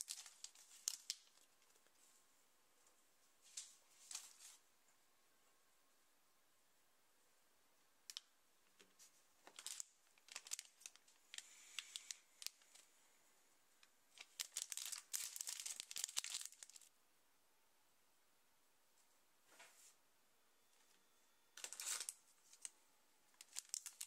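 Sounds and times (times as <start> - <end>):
plastic wrapper crinkling and tearing: 0.0 - 1.9, 9.4 - 12.8, 14.1 - 16.9, 21.6 - 22.7, 23.4 - 24.0.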